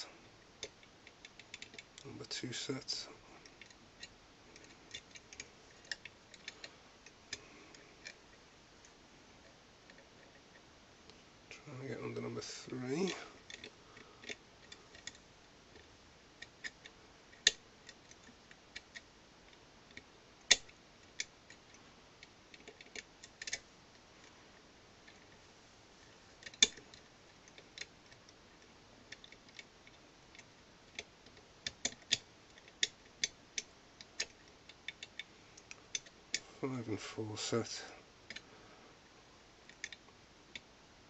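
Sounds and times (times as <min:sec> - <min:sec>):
lock pick clicking in a lock: 0:26.4 - 0:27.9.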